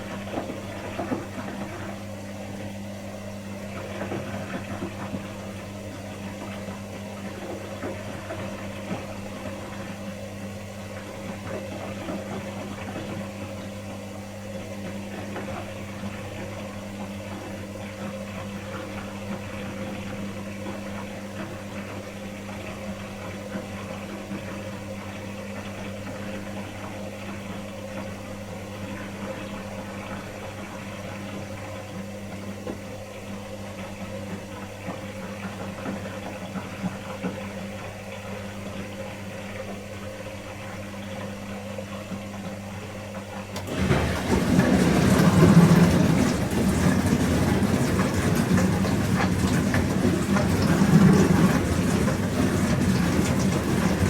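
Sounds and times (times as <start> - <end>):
dishwasher pump humming: 0.0 - 54.0
water spraying and splashing: 43.7 - 54.0.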